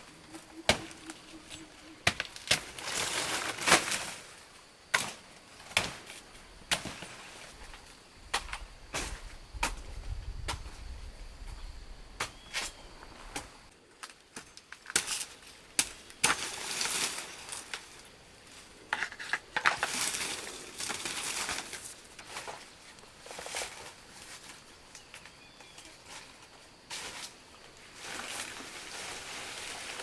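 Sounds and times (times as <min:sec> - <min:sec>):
rustling of objects handled: 0:16.4 - 0:30.0.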